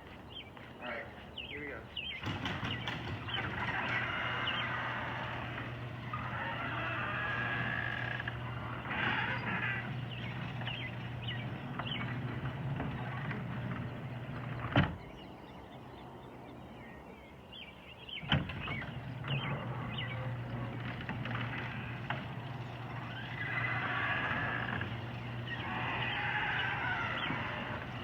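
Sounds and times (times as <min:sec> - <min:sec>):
garage door thump: 0:02.2 - 0:05.8
garage door opener running: 0:02.2 - 0:15.1, 0:18.2 - 0:28.0.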